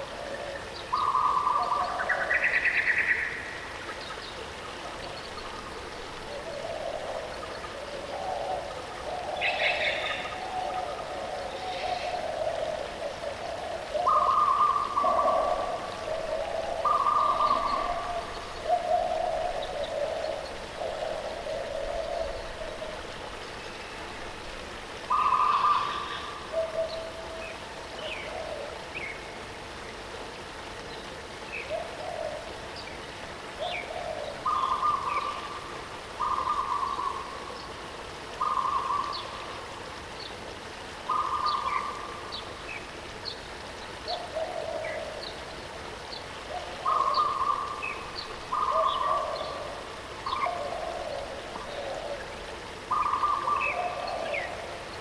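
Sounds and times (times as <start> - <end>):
birds calling: 33.6 - 35.6, 46.1 - 52.2, 52.9 - 54.7.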